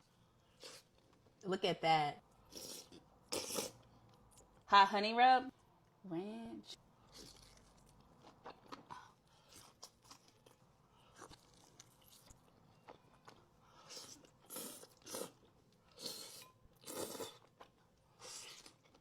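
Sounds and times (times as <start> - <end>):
crunching and chewing food: 7.0 - 19.0.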